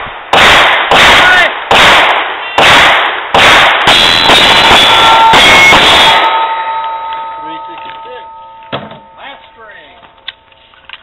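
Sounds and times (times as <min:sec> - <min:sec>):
pistol shots: 0:00.0 - 0:06.4
steel plates ringing: 0:03.9 - 0:10.5.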